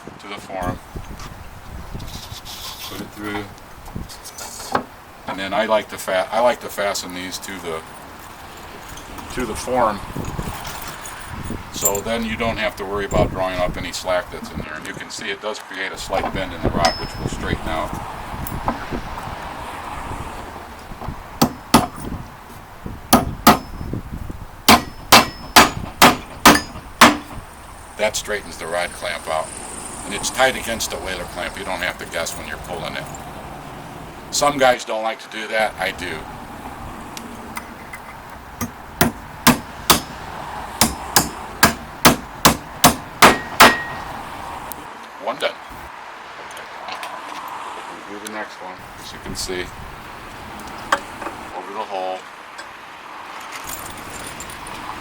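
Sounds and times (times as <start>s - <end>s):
hammer clanging on metal: 11.8s - 12.2s, 16.2s - 17.4s, 21.4s - 22.1s, 23.1s - 23.9s, 24.7s - 27.4s, 37.6s - 40.2s, 40.8s - 44.1s
faint metallic ring: 16.8s - 17.4s.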